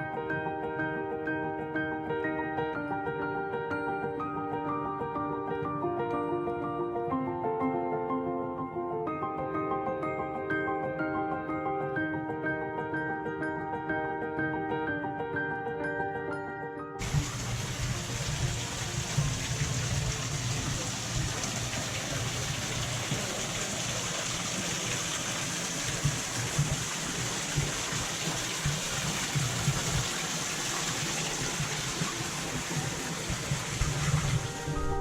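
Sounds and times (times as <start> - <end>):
waterfall splashing into pool: 17.0 - 35.0.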